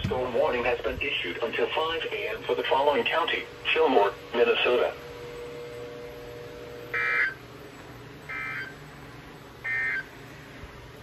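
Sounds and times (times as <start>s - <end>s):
buzzy data tone bursts: 1.2s - 7.5s, 8.2s - 8.8s, 9.6s - 10.1s.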